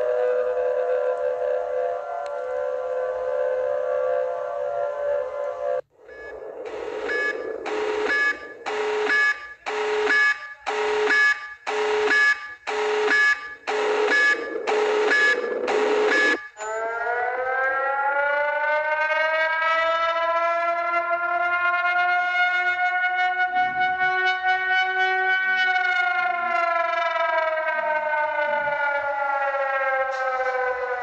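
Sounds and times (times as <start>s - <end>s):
rising siren tone: 0.0s - 31.0s
two-tone alarm beeps: 6.1s - 17.0s.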